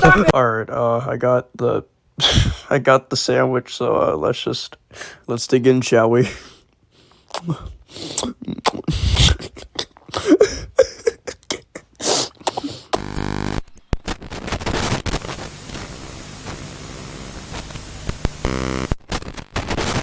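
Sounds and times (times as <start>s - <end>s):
loud hissing static: 12.0s - 20.0s.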